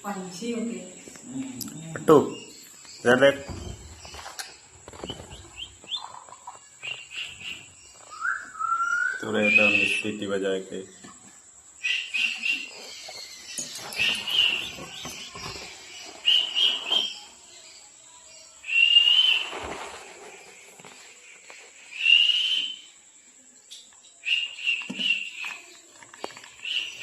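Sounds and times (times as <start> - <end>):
parrot whistling calls: 8.1 - 10.0.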